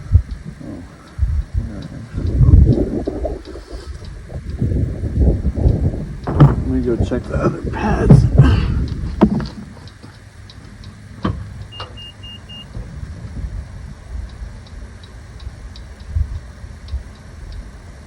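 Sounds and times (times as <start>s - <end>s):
faint ticks: 0.0s - 18.0s
wind rumbling on microphone: 0.0s - 18.0s
short high beeps: 11.7s - 12.8s.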